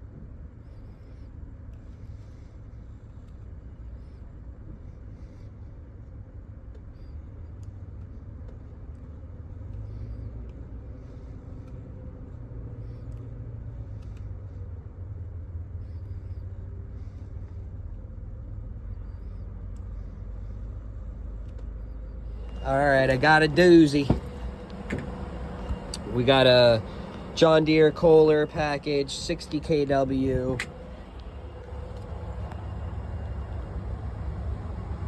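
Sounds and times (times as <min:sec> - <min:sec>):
machinery rumbling: 0:22.0 - 0:35.0.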